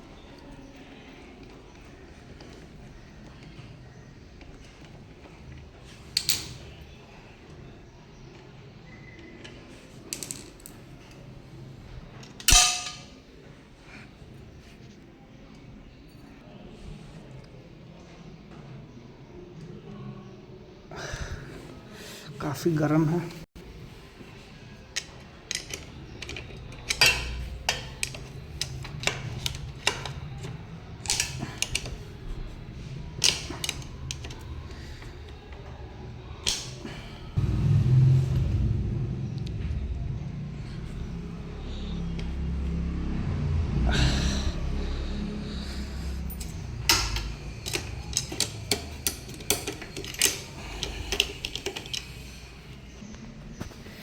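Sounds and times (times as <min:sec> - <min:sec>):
metal tools clinking on engine parts: 0:06.2 - 0:06.8, 0:12.2 - 0:13.3, 0:24.9 - 0:32.6, 0:33.2 - 0:35.4, 0:45.7 - 0:52.7
steady low hum: 0:23.6 - 0:54.0
low rumble: 0:37.2 - 0:48.0.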